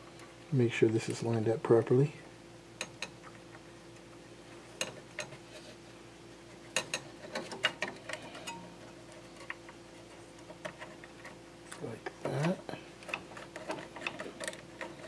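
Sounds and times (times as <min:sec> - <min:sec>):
faint steady hum: 0:00.0 - 0:15.0
small metal parts clicking: 0:10.4 - 0:15.0.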